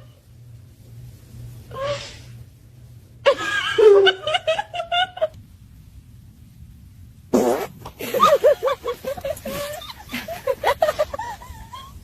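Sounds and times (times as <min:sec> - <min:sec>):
fart: 0:07.3 - 0:08.0.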